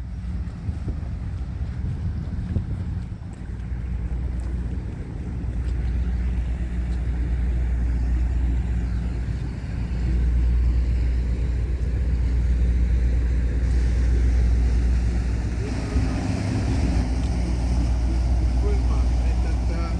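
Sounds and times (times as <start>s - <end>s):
engine low drone: 0.0s - 19.9s
rushing noise: 9.2s - 19.9s.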